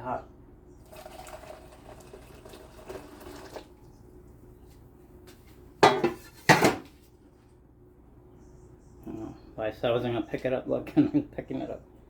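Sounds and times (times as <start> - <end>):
metal cookware handled: 5.8 - 6.8
cookware clattering down: 5.8 - 6.9.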